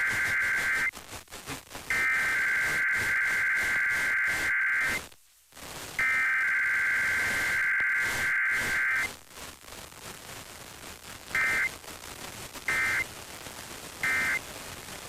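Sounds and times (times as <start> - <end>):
shrill two-tone data warble: 6.0 - 9.1.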